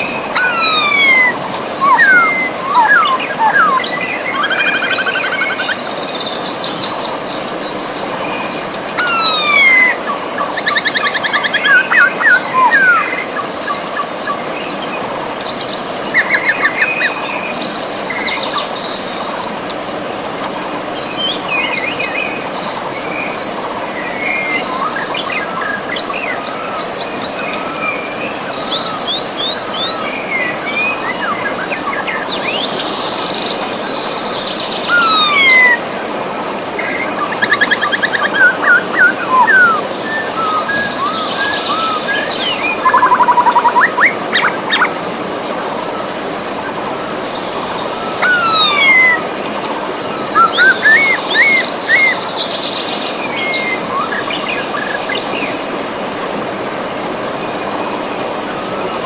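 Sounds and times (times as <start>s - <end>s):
river flowing: 0.0s - 59.0s
songbirds singing: 0.0s - 59.0s.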